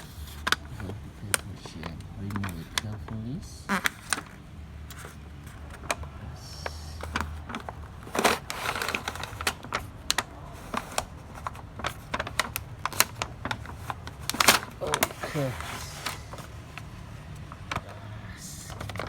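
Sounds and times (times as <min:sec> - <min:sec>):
plastic clicks and taps in printer: 0:00.0 - 0:15.1.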